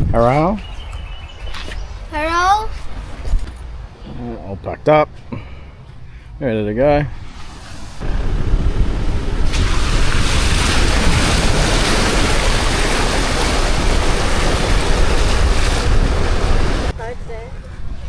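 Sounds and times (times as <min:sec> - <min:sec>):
wind buffeting microphone: 0:00.0 - 0:03.9, 0:08.0 - 0:18.0
surf rushing: 0:07.2 - 0:18.0.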